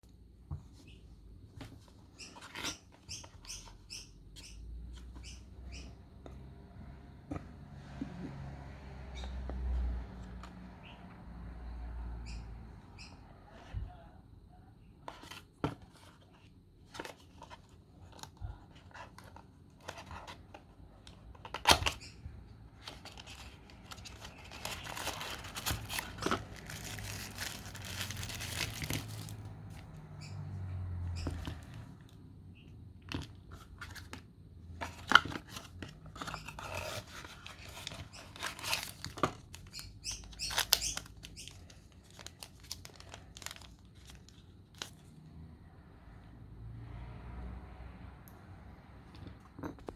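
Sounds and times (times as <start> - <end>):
packaging rustling and tearing: 22.9 - 29.5, 35.0 - 45.0.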